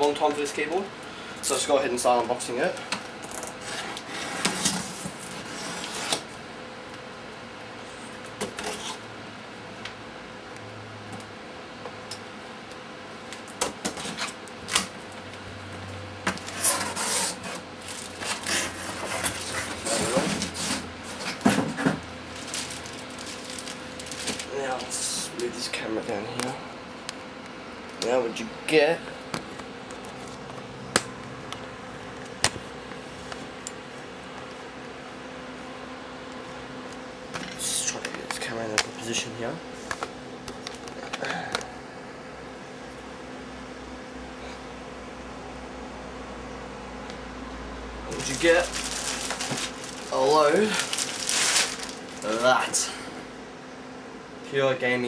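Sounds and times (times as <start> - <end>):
low room hum: 0.0 - 55.0
cardboard scraping rustle: 3.5 - 6.3, 16.4 - 24.7, 48.1 - 52.8.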